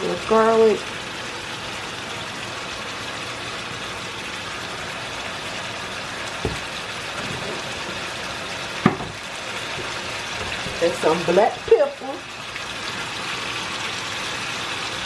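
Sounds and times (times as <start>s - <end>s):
chicken sizzling in hot oil: 0.0s - 15.0s
knock: 6.4s - 6.7s, 8.8s - 9.2s.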